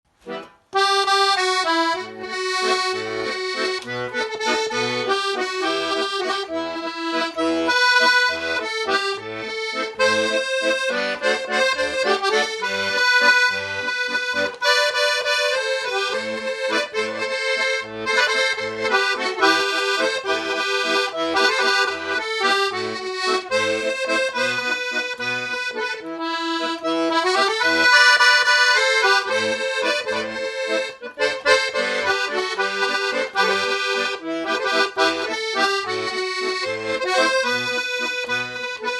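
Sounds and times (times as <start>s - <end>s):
button accordion playing a tune: 0.1s - 38.9s.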